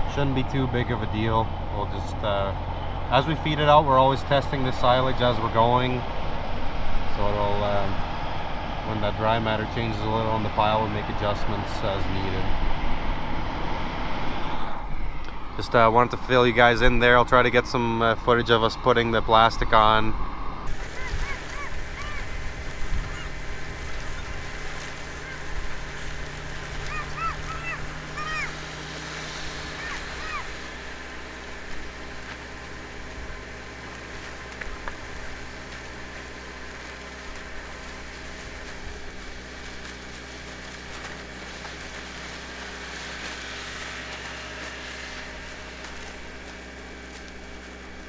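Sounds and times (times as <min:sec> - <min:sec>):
farm machine engine droning: 0:00.0 - 0:48.0
low hum: 0:20.1 - 0:48.0
wind noise: 0:20.7 - 0:30.8
geese honking: 0:20.7 - 0:32.4.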